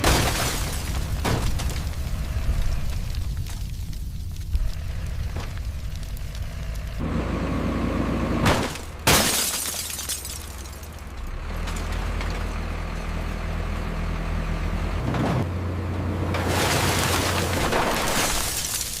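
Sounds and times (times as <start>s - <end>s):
crash with glass shattering: 0.0s - 2.0s, 8.5s - 10.9s, 16.4s - 19.0s
heavy machine engine running: 4.2s - 9.1s, 10.7s - 17.8s.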